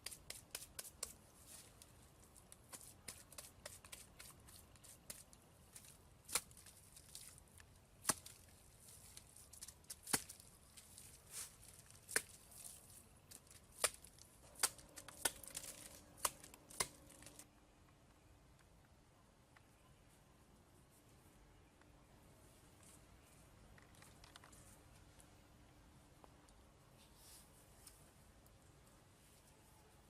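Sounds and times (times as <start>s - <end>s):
crackly rustling: 0.6s - 17.5s, 21.8s - 25.5s.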